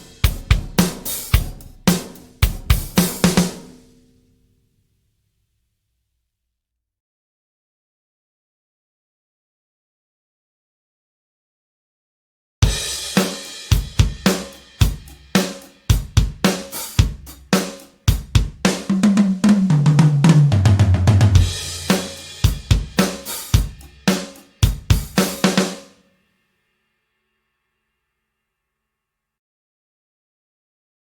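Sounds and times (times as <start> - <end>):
drum kit groove: 0.0 - 4.0, 12.6 - 26.0.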